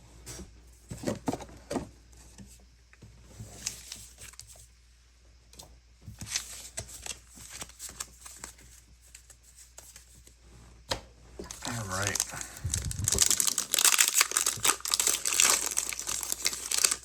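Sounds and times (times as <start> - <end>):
cards and plastic sleeves rustling: 3.4 - 4.7, 6.1 - 10.4, 11.4 - 17.0.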